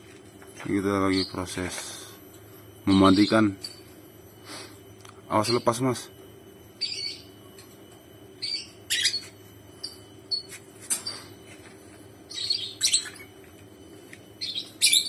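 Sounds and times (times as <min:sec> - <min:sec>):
bird chirping: 0:06.8 - 0:07.4, 0:08.4 - 0:11.3, 0:12.3 - 0:13.4, 0:14.4 - 0:15.0.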